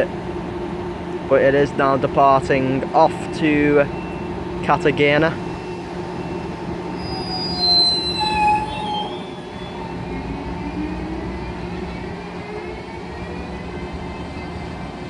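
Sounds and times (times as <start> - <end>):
train running hum: 0.0 - 15.0
train wheel squeals: 3.1 - 15.0.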